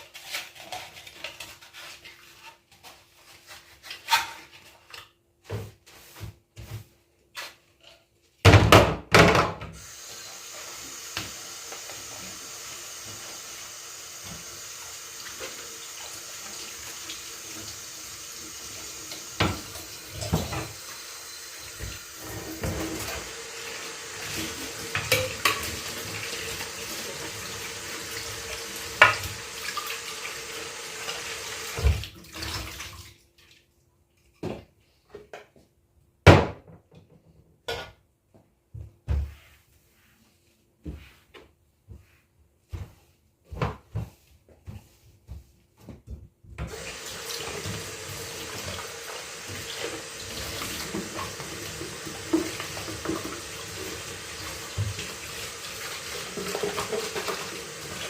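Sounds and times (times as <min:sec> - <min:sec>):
tap water running into sink: 0:09.8 - 0:33.1, 0:46.6 - 0:58.0.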